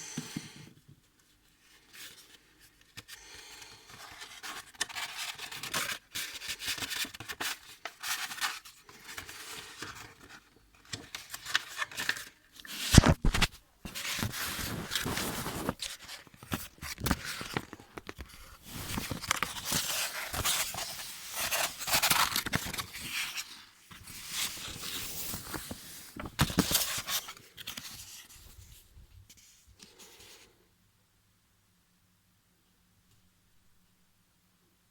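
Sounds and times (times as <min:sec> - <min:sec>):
packaging rustling and tearing: 0:04.2 - 0:23.5.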